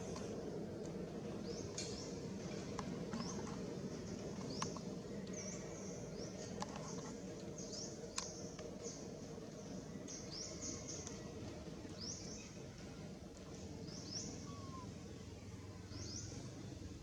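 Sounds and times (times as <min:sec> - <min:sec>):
low background noise: 0:00.0 - 0:17.0
faint clicks: 0:08.1 - 0:08.8
baby monkey squeaking: 0:14.5 - 0:14.8.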